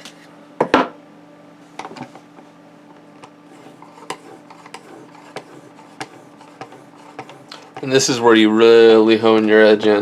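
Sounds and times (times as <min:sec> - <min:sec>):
knife rubbing strokes: 0:03.5 - 0:08.1.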